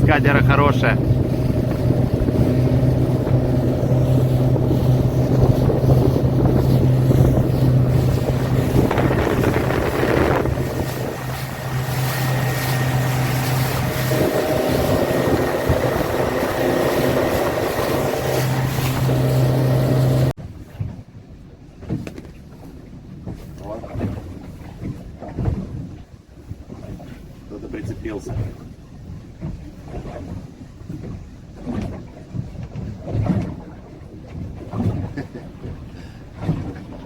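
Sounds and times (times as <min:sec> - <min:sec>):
rushing water: 0:00.0 - 0:20.4
motorboat engine running: 0:00.0 - 0:37.0
wind: 0:00.0 - 0:37.0.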